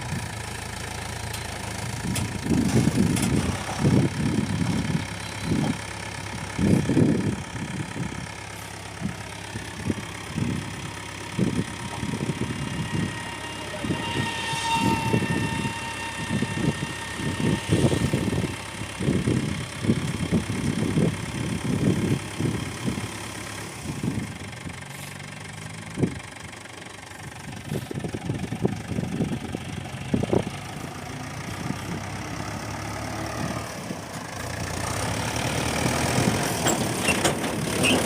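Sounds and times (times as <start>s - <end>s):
heavy diesel engine running: 0.0s - 38.0s.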